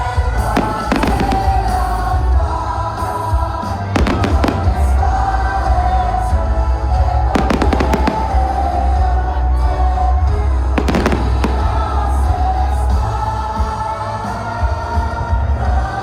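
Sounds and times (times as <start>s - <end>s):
music with heavy bass and singing: 0.0s - 16.0s
fireworks cracking: 0.4s - 2.3s, 3.9s - 5.1s, 7.4s - 8.9s, 10.8s - 12.6s.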